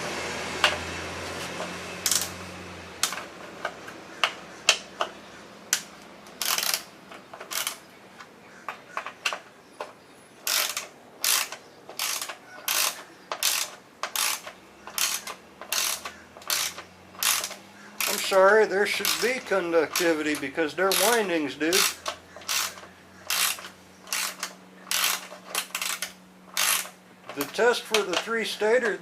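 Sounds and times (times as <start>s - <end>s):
ratchet wrench clicking: 2.0s - 2.4s, 5.7s - 7.8s, 8.9s - 29.0s.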